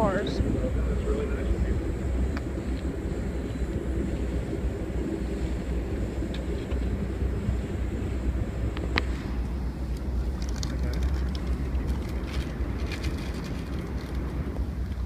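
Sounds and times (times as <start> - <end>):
train rumble from inside: 0.0 - 15.0.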